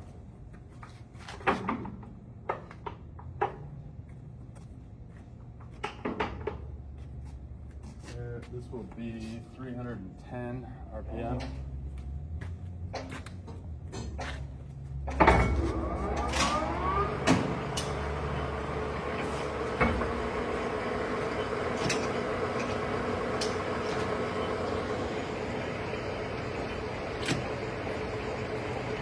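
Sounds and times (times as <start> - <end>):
lathe spindle whine: 15.8 - 29.0.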